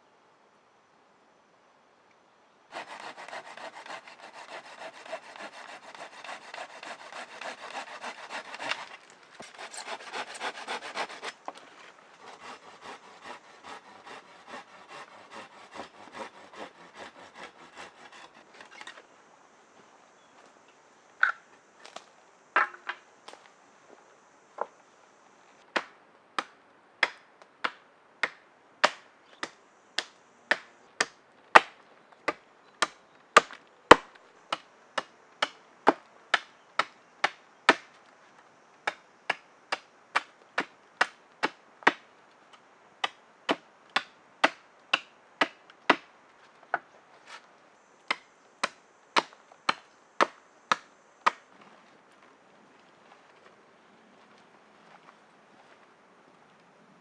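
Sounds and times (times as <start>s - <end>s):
chopping wood: 2.8s - 11.6s, 25.7s - 37.9s, 38.8s - 42.0s, 43.0s - 46.1s, 48.1s - 51.4s.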